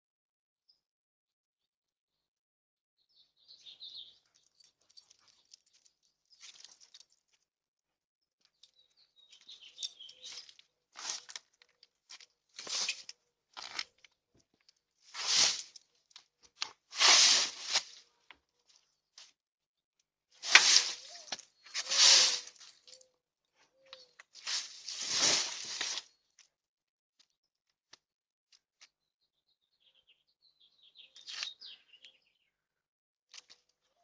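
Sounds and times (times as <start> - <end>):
tree branches rustling: 9.4 - 13.9, 15.0 - 15.9, 16.7 - 18.0, 20.4 - 23.0, 24.3 - 26.2.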